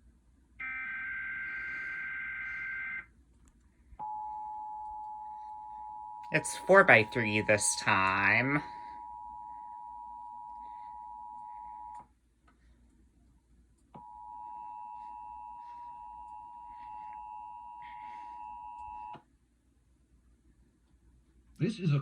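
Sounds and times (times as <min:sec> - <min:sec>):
faint high whine: 0:00.5 - 0:12.1, 0:14.0 - 0:19.2
two-tone emergency alarm: 0:00.6 - 0:03.1, 0:04.0 - 0:12.0, 0:14.0 - 0:19.2.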